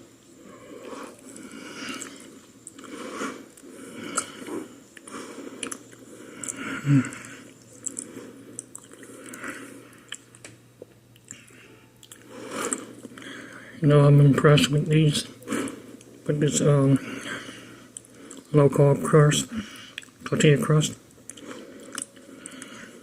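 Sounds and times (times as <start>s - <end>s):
person chewing food: 0.6s - 13.6s, 17.1s - 18.5s, 19.7s - 20.2s, 21.2s - 23.0s.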